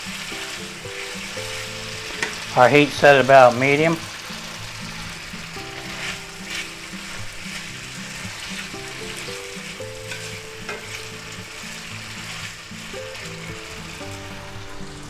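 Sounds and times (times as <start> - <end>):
chicken sizzling in hot oil: 0.0 - 15.0
utensil scraping a pan: 0.0 - 15.0.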